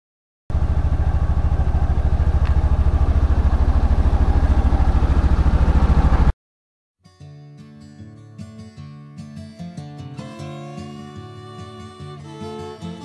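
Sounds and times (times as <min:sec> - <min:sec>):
engine idling: 0:00.5 - 0:06.3.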